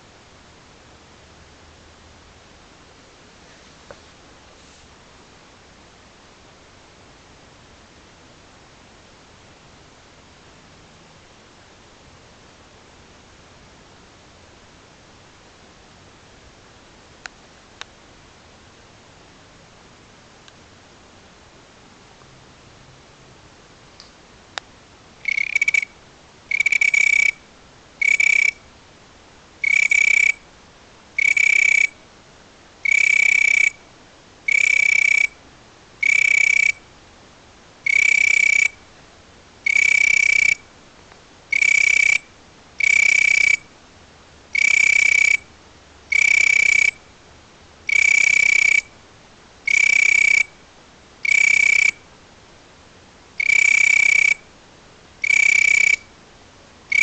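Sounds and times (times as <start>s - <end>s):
insect shrill chirping: 25.2s - 25.9s, 26.5s - 27.4s, 28.0s - 28.6s, 29.6s - 30.4s, 31.2s - 32.0s, 32.8s - 33.8s, 34.5s - 35.4s, 36.0s - 36.8s, 37.9s - 38.8s, 39.6s - 40.6s, 41.5s - 43.7s, 44.6s - 45.5s, 46.1s - 47.0s, 47.9s - 48.9s, 49.7s - 50.5s, 51.2s - 52.0s, 53.4s - 54.4s, 55.2s - 56.1s.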